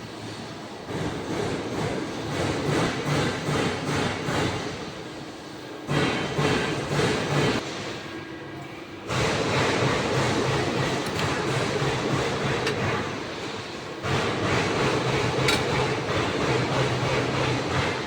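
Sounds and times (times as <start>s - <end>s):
machinery running: 9.1s - 18.0s.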